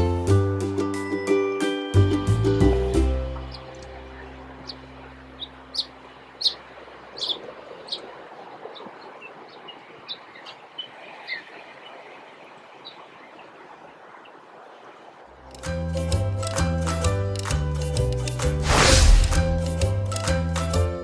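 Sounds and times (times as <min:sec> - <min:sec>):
background music: 0:00.0 - 0:05.5, 0:15.4 - 0:21.0
outdoor background hiss: 0:00.0 - 0:17.4
birds chirping: 0:02.6 - 0:15.3.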